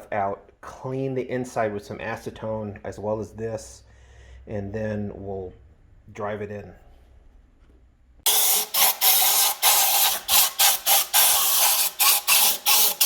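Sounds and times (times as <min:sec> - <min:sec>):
compressed air blow gun bursts: 0:08.3 - 0:13.0.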